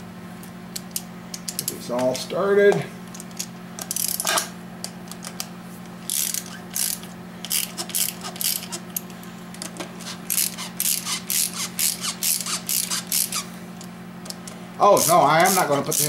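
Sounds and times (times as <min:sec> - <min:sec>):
hand ratchet clicking: 0:03.1 - 0:04.3, 0:06.1 - 0:09.0, 0:10.0 - 0:13.4, 0:15.0 - 0:16.0.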